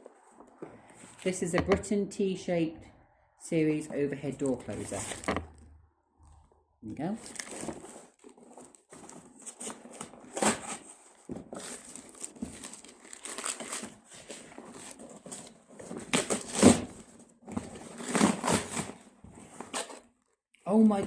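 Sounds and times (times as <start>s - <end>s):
packaging crumpling and tearing: 7.2s - 17.1s.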